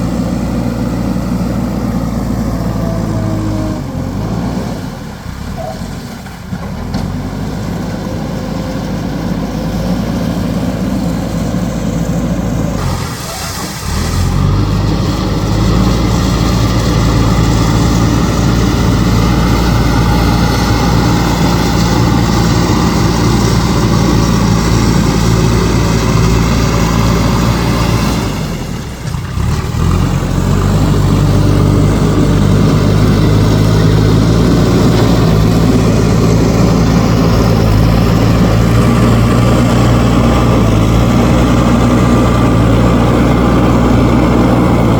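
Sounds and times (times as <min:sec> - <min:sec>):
backhoe diesel engine running: 0:00.0 - 0:44.9.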